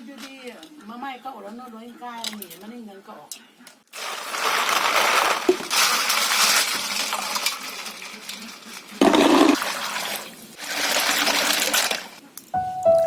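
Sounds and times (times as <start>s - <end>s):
water pouring and splashing: 4.0s - 12.2s.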